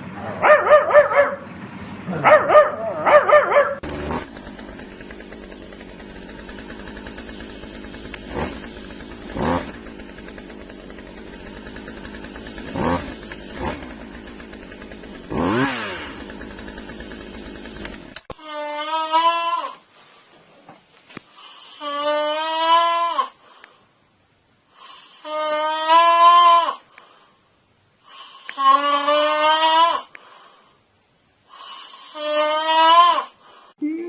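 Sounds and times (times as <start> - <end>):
dog barking and yelping: 0.2 - 1.5, 2.1 - 3.8.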